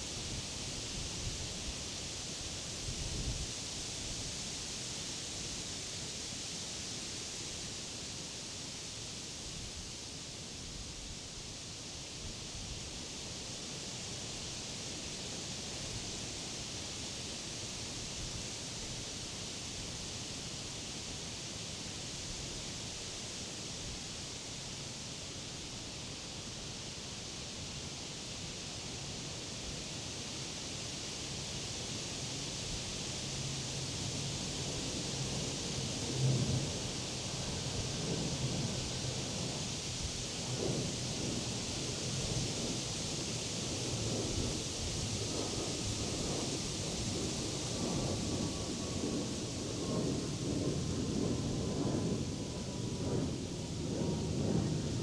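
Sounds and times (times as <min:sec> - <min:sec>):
wind rustling leaves: 0:00.0 - 0:55.0
low wind rumble: 0:35.5 - 0:55.0.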